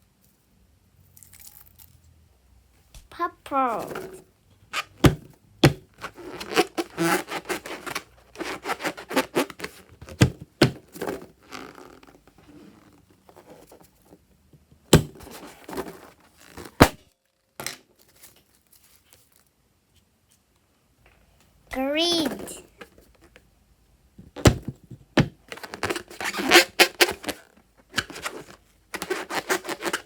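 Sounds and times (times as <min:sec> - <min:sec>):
sharp taps and thuds: 0:05.0 - 0:05.9.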